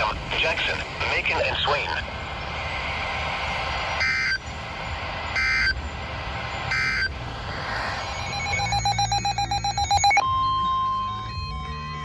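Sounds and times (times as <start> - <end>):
radio hiss: 0.0 - 10.2
two-tone digital data warble: 8.0 - 10.2.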